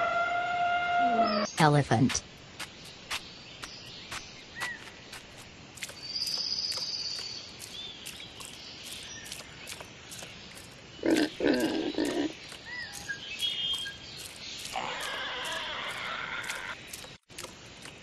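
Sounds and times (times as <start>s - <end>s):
loud animal grunts: 11.0s - 12.3s.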